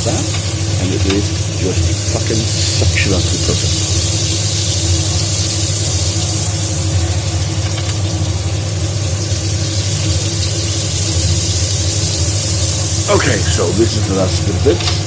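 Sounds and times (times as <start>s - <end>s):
low mechanical hum: 0.0s - 15.0s.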